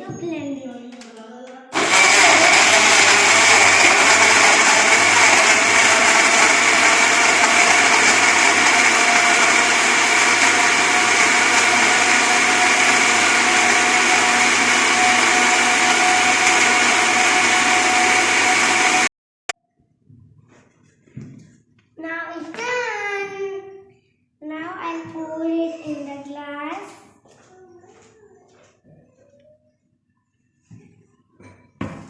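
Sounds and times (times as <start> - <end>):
electric blender running: 1.8 - 19.1.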